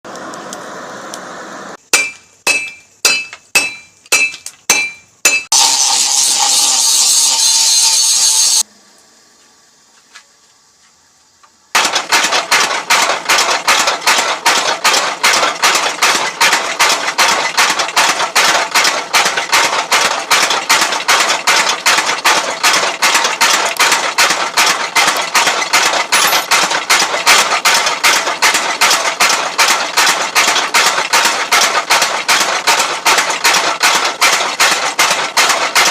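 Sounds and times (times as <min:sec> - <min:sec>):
power hammer pounding steel: 0:01.8 - 0:08.6, 0:11.8 - 0:35.9
hammer ringing on metal: 0:01.9 - 0:05.5.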